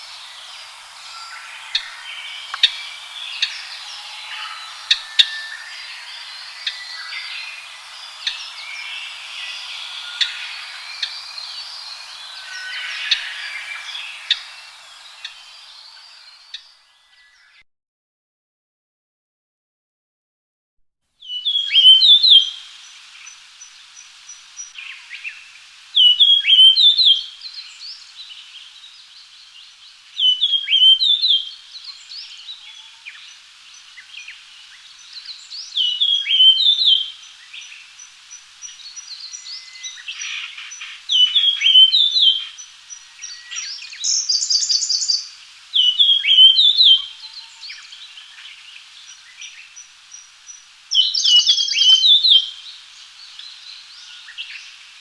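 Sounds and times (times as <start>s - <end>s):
faint high ticking: 0.0s - 16.7s
buzzy bird call: 0.0s - 16.8s
bird whistling song: 0.0s - 17.5s, 21.2s - 22.7s, 34.0s - 37.8s, 38.6s - 49.6s, 50.9s - 52.7s.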